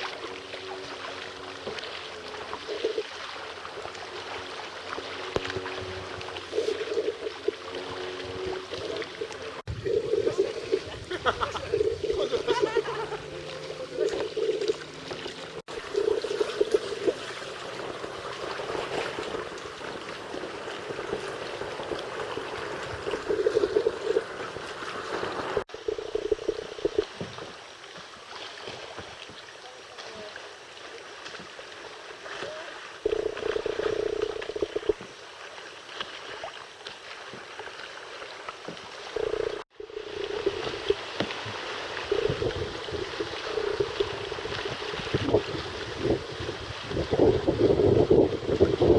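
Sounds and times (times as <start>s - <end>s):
water sloshing around kayak: 0.0s - 48.9s
wind on microphone: 5.4s - 27.1s, 39.2s - 48.9s.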